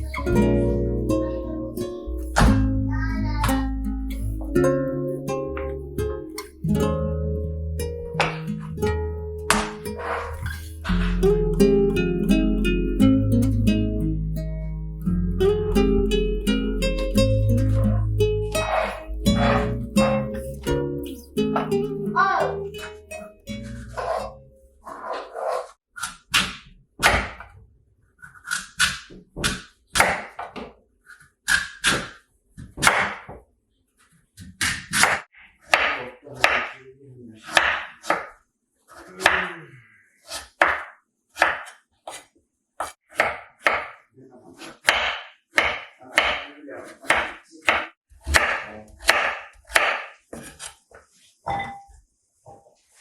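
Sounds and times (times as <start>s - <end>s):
knife chopping on wooden board: 8.2s - 8.5s, 9.5s - 10.3s, 31.6s - 33.4s, 34.6s - 36.8s, 37.5s - 38.4s, 40.3s - 44.0s, 44.6s - 50.8s.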